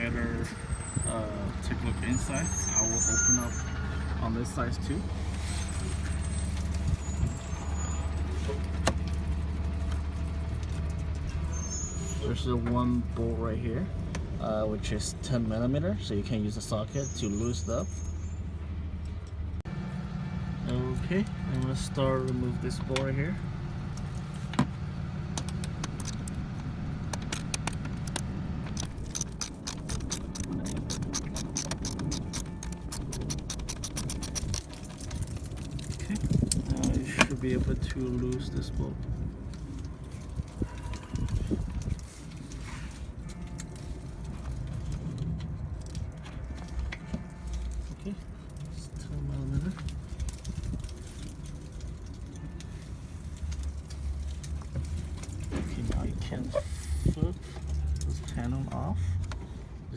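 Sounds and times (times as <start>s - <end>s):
socket ratchet clicking: 28.8s - 34.7s.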